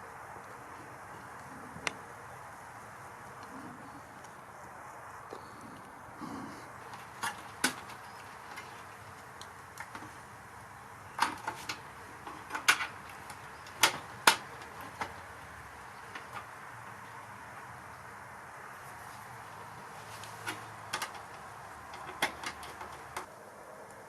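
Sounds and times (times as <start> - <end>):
sharp clicks and knocks: 6.7 - 10.2, 11.1 - 17.7, 19.6 - 23.3.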